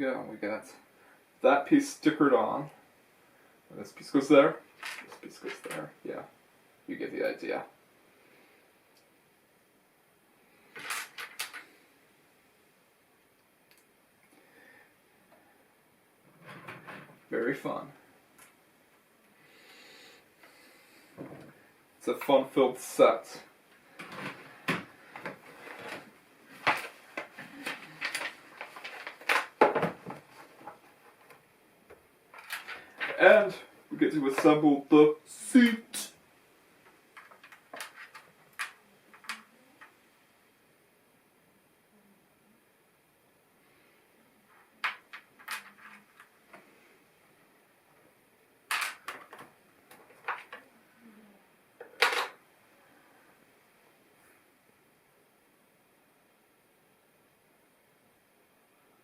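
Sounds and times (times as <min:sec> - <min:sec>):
plastic pieces clicking and rattling: 0:04.8 - 0:05.8, 0:10.8 - 0:11.7, 0:27.6 - 0:29.8, 0:32.3 - 0:33.2, 0:37.2 - 0:39.5, 0:44.8 - 0:46.3, 0:48.7 - 0:50.6
plastic bricks clicking and rattling: 0:37.2 - 0:39.5, 0:44.8 - 0:46.3, 0:48.7 - 0:49.4.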